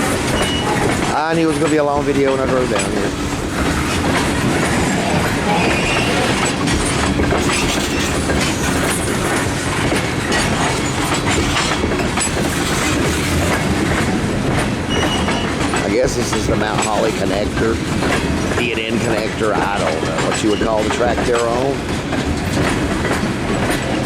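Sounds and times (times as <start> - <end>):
high wheel squeal: 0.0 - 1.5, 4.8 - 9.3, 14.9 - 15.8, 19.0 - 21.7
freight train wheels clattering: 0.0 - 24.0.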